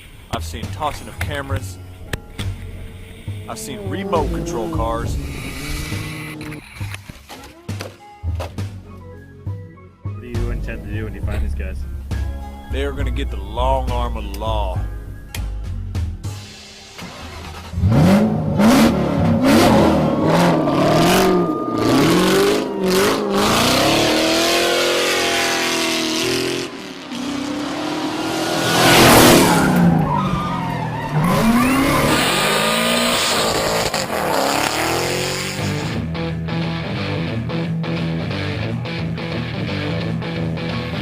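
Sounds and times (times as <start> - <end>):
tyres skidding: 0.0 - 8.8, 16.2 - 36.0
motorcycle engines revving: 2.3 - 6.9, 17.7 - 36.1.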